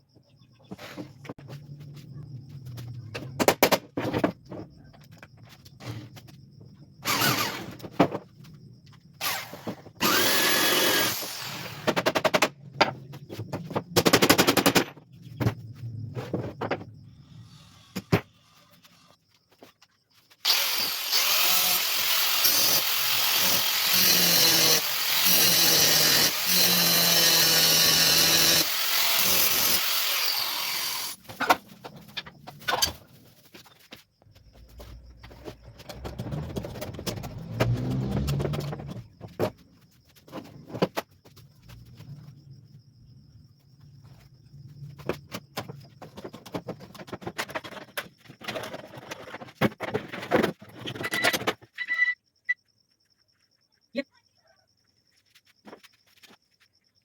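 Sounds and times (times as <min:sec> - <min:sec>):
bandsaw cutting wood: 0:07.0 - 0:07.7, 0:09.2 - 0:11.9, 0:20.4 - 0:31.2.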